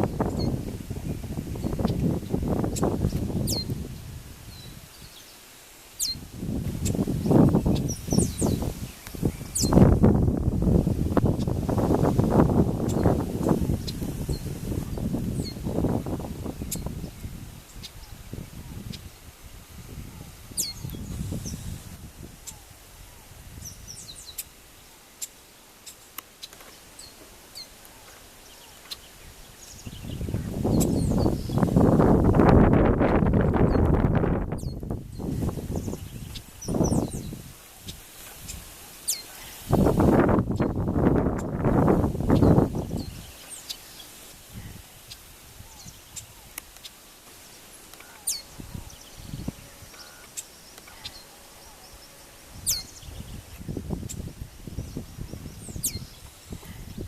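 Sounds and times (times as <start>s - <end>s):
birds chipping and calling: 0.0s - 19.1s, 19.8s - 57.0s
bird chip notes: 47.9s - 54.2s.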